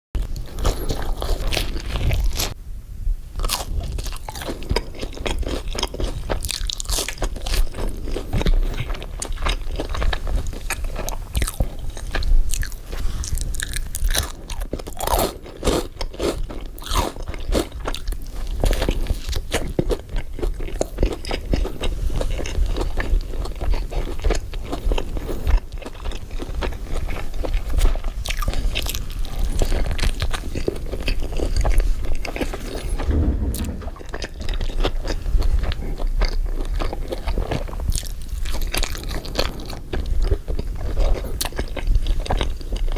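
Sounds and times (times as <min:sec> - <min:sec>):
person chewing crunchy food: 0:03.4 - 0:27.1
low rumble: 0:33.0 - 0:34.5.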